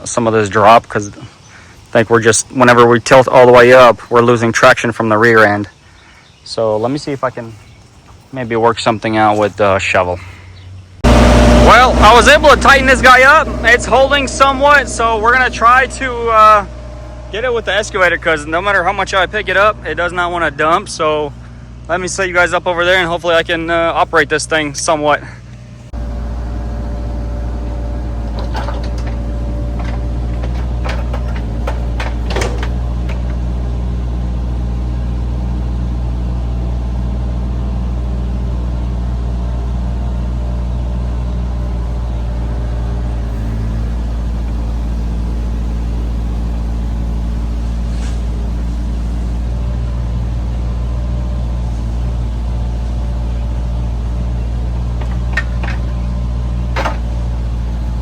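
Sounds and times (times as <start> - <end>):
diesel engine running: 0.0 - 58.0
sharp metallic clanks: 11.0 - 20.5, 27.0 - 33.7, 54.8 - 57.4.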